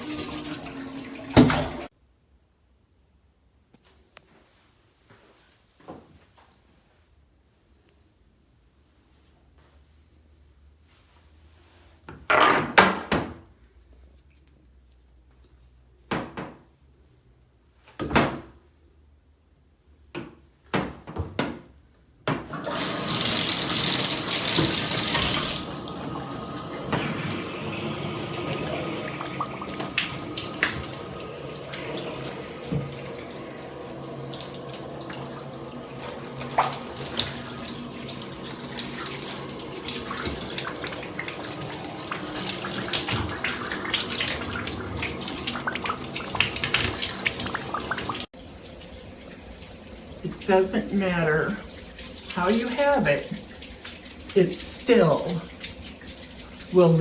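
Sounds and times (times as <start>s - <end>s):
faucet spraying water: 0.0s - 1.9s, 22.5s - 57.0s
water splashing in a sink: 0.0s - 1.9s, 22.4s - 57.0s.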